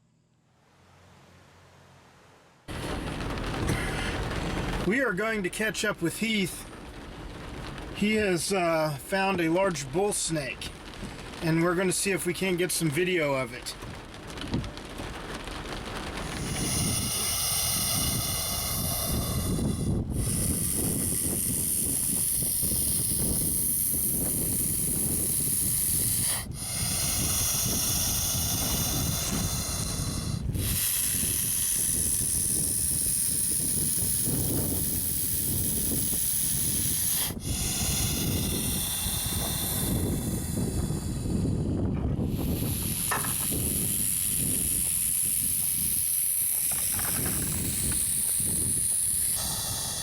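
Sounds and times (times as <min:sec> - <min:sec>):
snake hissing loudly: 0:16.2 - 0:50.0.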